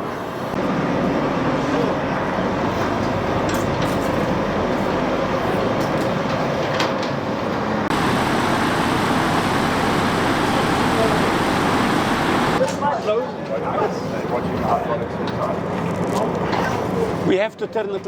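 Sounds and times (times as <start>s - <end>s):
heavy vehicle engine running: 7.9s - 12.6s.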